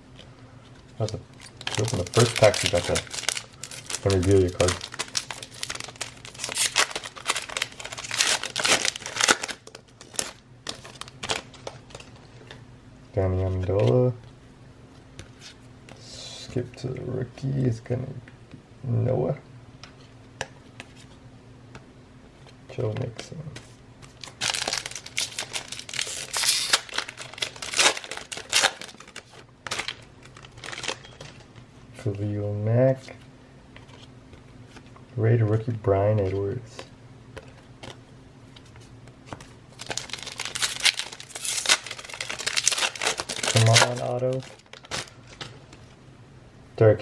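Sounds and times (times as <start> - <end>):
card pack wrapper crinkling and tearing: 1.0 - 12.5, 24.0 - 31.5, 39.3 - 45.6.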